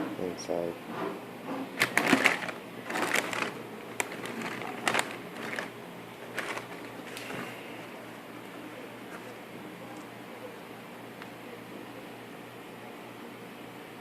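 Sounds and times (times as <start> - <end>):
paper and cardboard rustling: 1.8 - 8.0.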